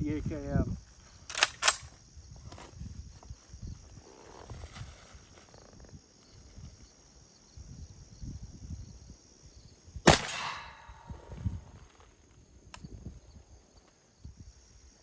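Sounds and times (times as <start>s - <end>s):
rifle shot with echo: 10.1s - 11.4s.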